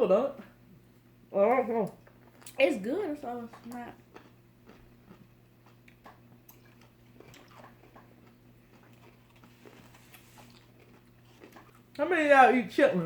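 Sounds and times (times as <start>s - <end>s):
low steady hum: 0.0s - 13.0s
mouth clicks and chewing: 3.5s - 12.0s.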